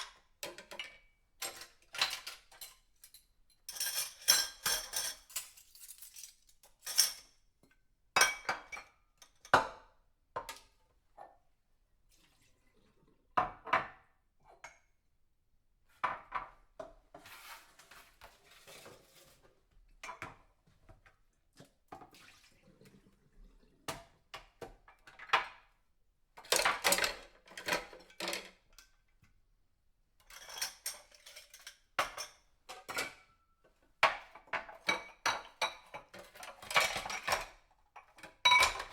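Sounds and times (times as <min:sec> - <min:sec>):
dishes and cutlery clattering: 0:00.4 - 0:07.3, 0:26.4 - 0:28.9, 0:30.2 - 0:33.3, 0:34.0 - 0:38.9.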